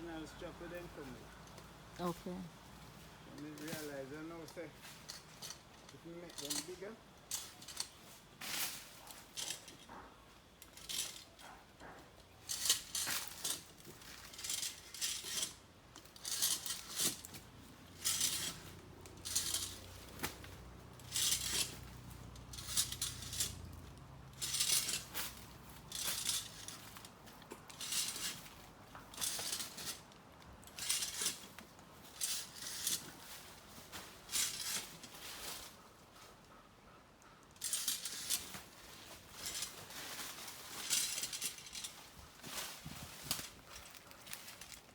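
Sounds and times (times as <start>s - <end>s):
climbing device clinking and rattling: 9.0s - 33.2s, 37.5s - 44.9s.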